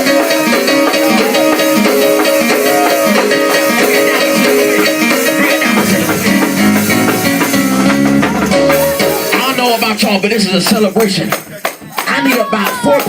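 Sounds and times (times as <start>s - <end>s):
live gospel band playing: 0.0s - 11.1s
bass line: 4.0s - 10.4s.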